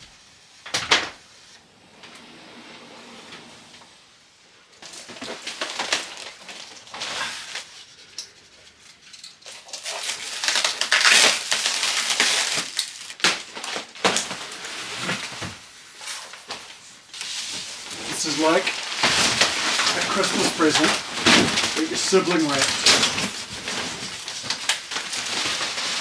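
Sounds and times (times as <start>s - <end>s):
packaging tearing and crinkling: 4.8s - 7.8s, 9.2s - 15.3s, 16.1s - 26.0s.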